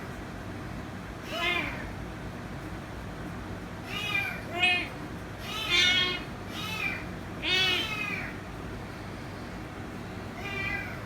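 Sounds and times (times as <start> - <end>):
kitten meowing: 5.5 - 8.3.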